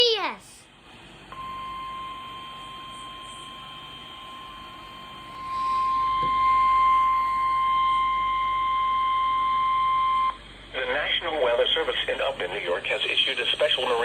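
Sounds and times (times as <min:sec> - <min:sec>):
steady high alarm tone: 0:01.4 - 0:10.4.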